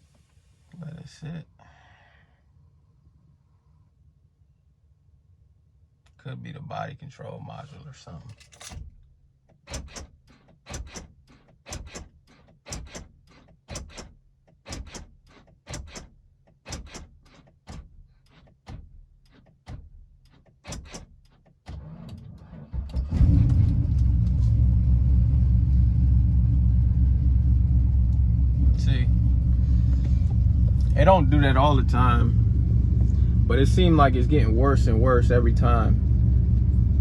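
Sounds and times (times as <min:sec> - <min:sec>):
engine starting and idling: 0:08.7 - 0:37.0.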